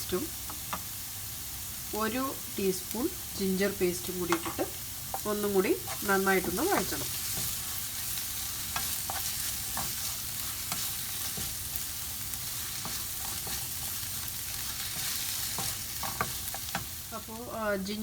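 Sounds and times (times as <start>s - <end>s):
onion sizzling in hot oil: 0.0s - 18.0s
spoon scraping a pan: 4.2s - 17.0s.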